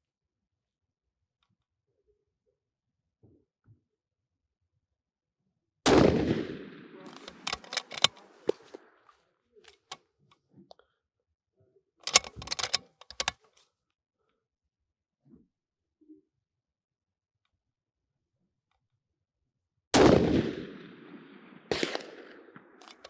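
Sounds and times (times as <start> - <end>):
rifle shot: 5.9 - 8.4, 12.1 - 13.3, 21.7 - 23.0
rifle bolt metallic clicks: 7.1 - 8.6, 12.0 - 13.4.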